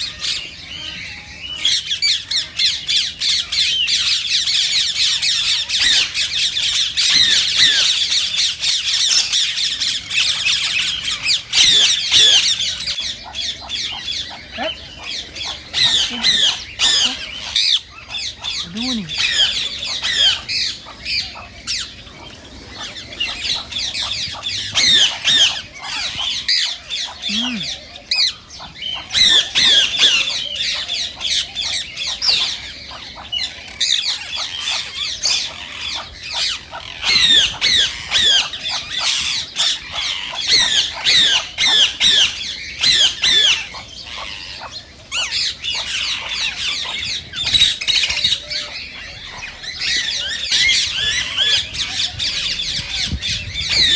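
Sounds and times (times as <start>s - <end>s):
parakeets screeching: 0.0s - 53.9s.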